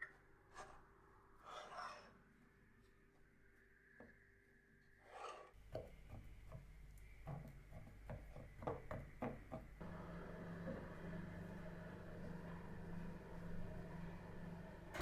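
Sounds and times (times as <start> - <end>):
steady low hum: 9.7 - 15.0.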